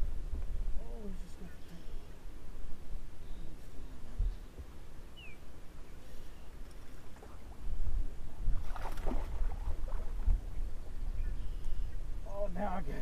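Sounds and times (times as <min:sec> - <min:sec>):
waves slapping boat hull: 0:06.6 - 0:11.0.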